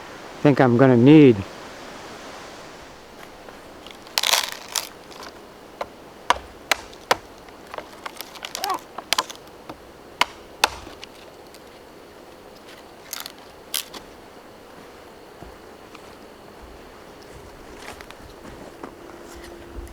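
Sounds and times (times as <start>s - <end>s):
knife scraping wood: 3.5s - 14.2s
sharp cracks and clicks: 3.8s - 11.7s, 12.5s - 14.0s.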